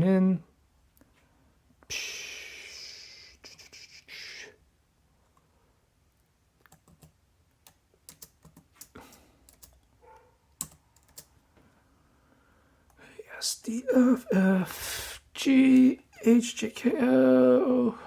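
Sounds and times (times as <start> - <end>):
laptop keys clicking: 6.6 - 9.9, 10.6 - 11.3.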